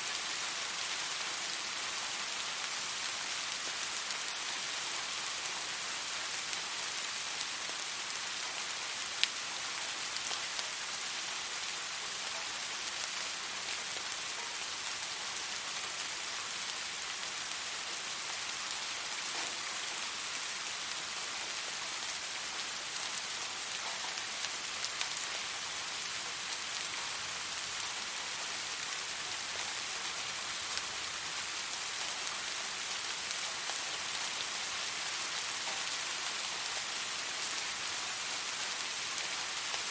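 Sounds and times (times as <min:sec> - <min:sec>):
gentle rain falling: 0:00.0 - 0:39.9.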